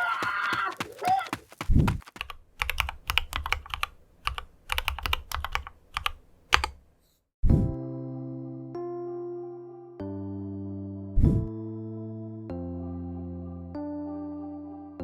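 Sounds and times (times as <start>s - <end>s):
mechanical keyboard typing: 1.6s - 6.8s
soft electric piano music: 7.8s - 15.0s.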